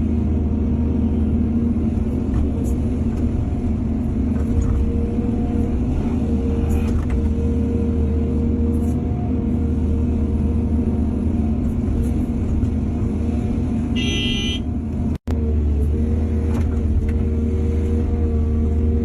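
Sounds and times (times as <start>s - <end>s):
diesel machinery humming: 0.0s - 19.0s.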